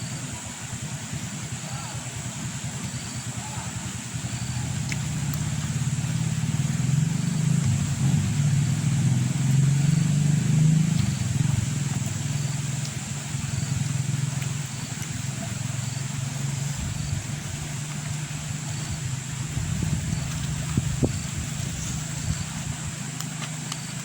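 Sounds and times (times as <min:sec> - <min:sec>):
motor engine humming: 0:00.0 - 0:24.0.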